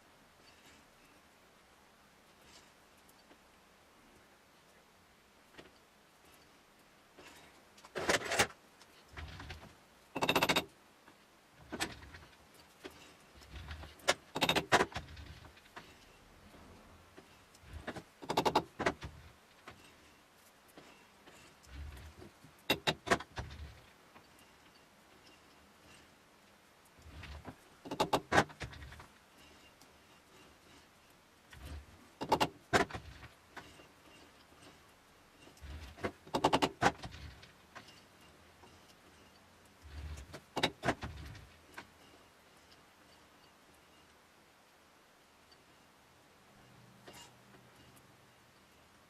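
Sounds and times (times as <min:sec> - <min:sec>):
metal clinks and rattles: 0:07.2 - 0:10.8, 0:11.6 - 0:44.1
ratchety clicking: 0:10.2 - 0:10.7.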